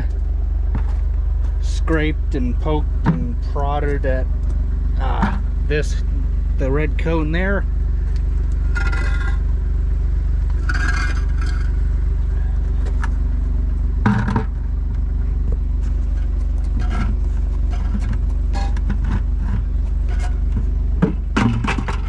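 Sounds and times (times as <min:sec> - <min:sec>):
tractor engine idling: 0:00.0 - 0:22.0
scrapes and knocks: 0:08.7 - 0:09.4, 0:10.5 - 0:11.8, 0:15.8 - 0:22.0.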